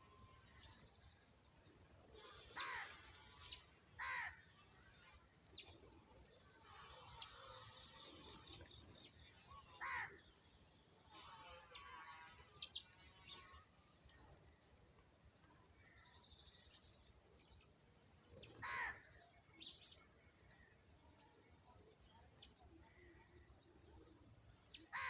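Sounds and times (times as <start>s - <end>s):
small birds chirping and twittering: 0.0s - 25.0s
crow cawing: 2.6s - 3.0s, 4.0s - 4.4s, 9.8s - 10.2s, 18.6s - 19.0s.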